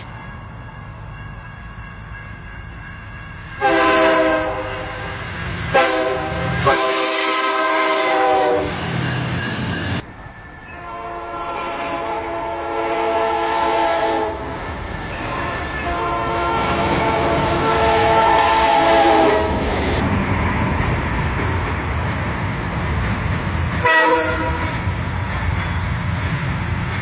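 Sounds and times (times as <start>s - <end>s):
train rumbling: 0.0s - 27.0s
train horn blasts: 3.6s - 8.8s, 10.8s - 14.6s, 15.2s - 19.6s, 23.8s - 24.8s
crossing signal ringing: 6.5s - 19.3s.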